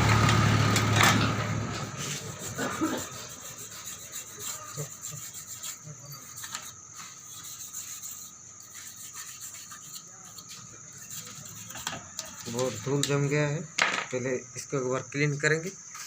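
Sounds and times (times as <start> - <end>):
circuit board rubbing and scraping: 1.9 - 13.2.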